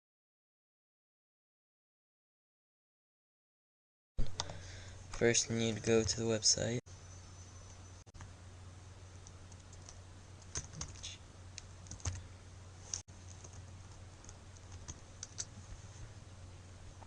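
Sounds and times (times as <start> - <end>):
steady low hum: 4.2 - 17.0
keyboard typing: 9.2 - 12.2, 12.9 - 15.6.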